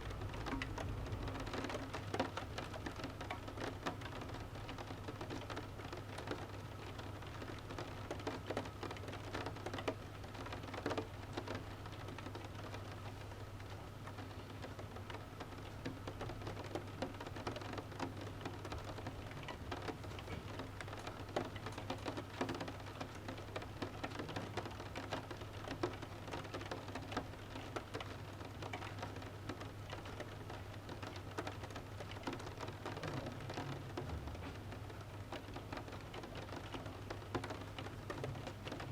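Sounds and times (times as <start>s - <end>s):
rain pattering on a window: 0.0s - 38.9s.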